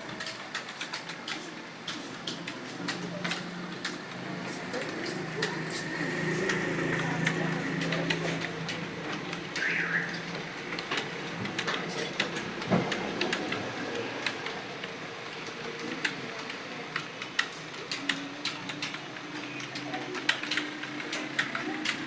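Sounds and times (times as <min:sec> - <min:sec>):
keyboard keys clicking: 0:07.2 - 0:22.0.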